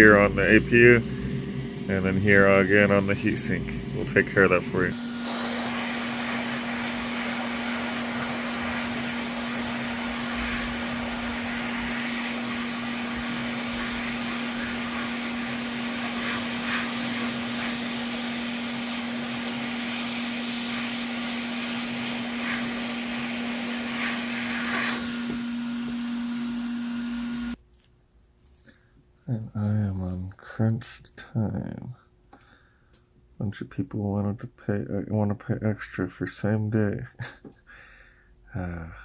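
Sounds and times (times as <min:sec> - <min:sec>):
electric motor humming with air rush: 0:00.0 - 0:27.6.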